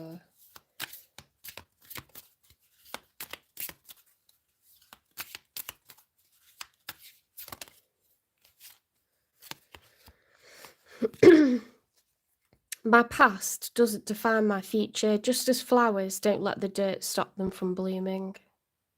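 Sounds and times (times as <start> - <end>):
cards shuffling and snapping: 0.3 - 11.2.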